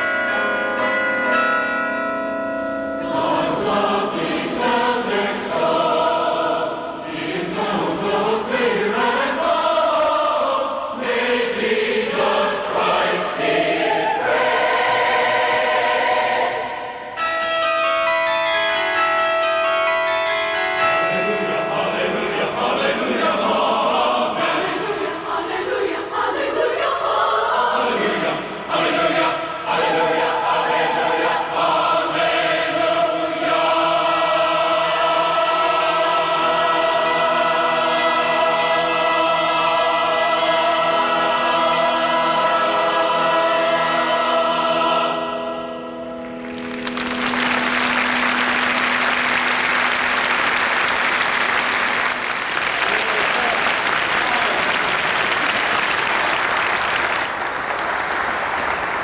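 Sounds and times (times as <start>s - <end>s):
choir singing: 3.0s - 17.6s, 21.0s - 51.9s
audience applause: 46.4s - 59.0s.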